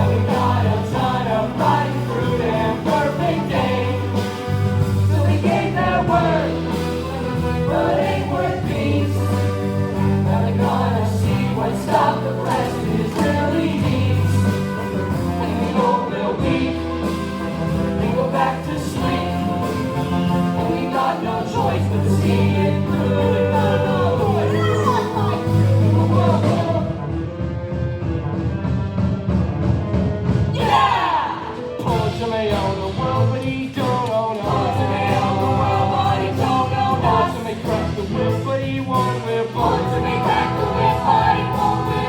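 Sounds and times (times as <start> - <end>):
chorus singing a show tune: 0.0 - 26.9, 30.6 - 42.0
band with sustained bass: 0.0 - 30.5.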